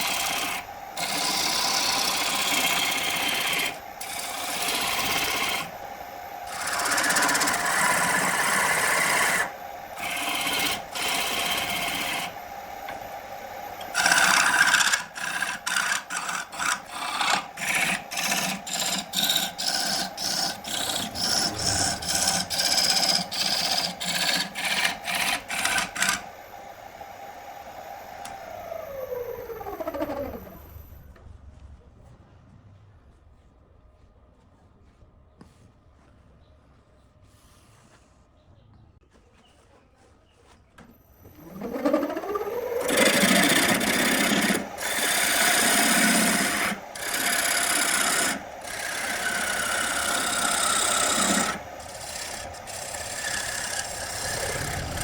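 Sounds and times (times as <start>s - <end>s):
faint machine hum: 0.0s - 55.0s
abrasive scraping on wood: 14.0s - 26.2s.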